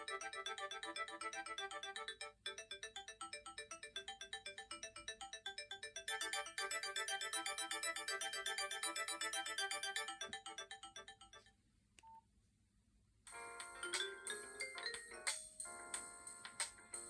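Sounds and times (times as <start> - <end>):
phone ringtone melody: 0.0 - 11.5.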